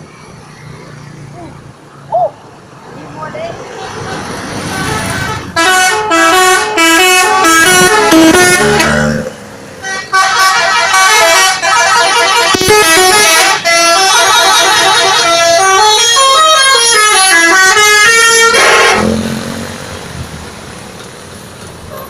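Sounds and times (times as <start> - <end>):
multi-tone musical bus horn: 3.9 - 19.6.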